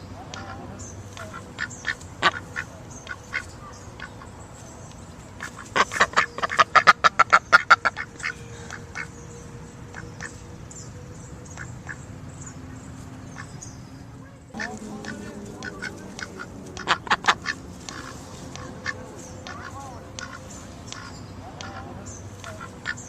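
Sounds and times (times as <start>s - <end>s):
duck quacking: 0.2s - 4.3s, 5.4s - 9.1s, 14.6s - 23.0s.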